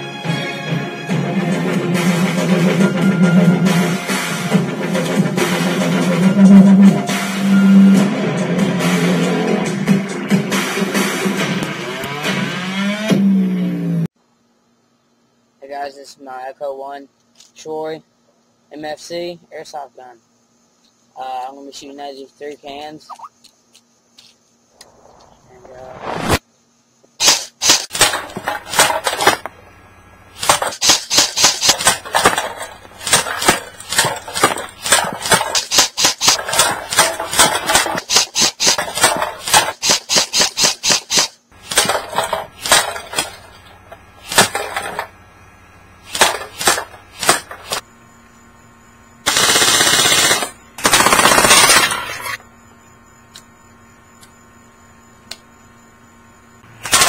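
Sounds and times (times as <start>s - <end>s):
airsoft rifle shots: 27.2s - 29.5s, 30.4s - 43.4s, 44.2s - 45.0s, 46.1s - 47.8s, 49.2s - 52.4s, 56.8s - 57.0s.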